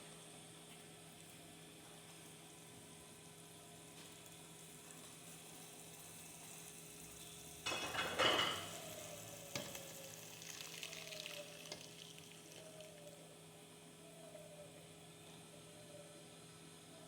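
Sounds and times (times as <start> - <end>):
mixture sizzling in a pan: 4.0 - 13.4.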